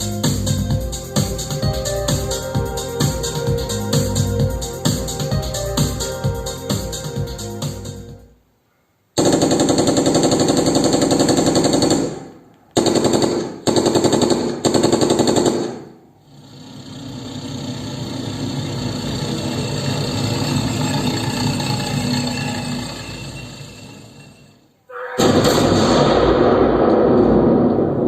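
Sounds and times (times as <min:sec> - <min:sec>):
automatic gunfire: 0:09.2 - 0:15.9.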